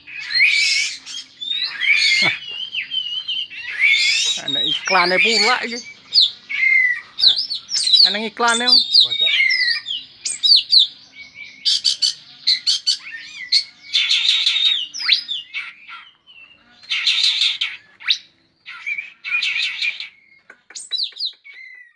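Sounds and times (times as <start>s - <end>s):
bird singing whistled notes: 0.0s - 21.9s
bird buzzy chattering: 0.1s - 10.7s.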